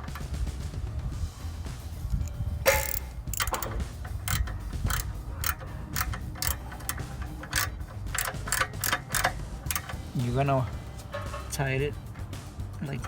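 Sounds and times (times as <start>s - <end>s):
ratchet wrench clicking: 2.2s - 10.3s.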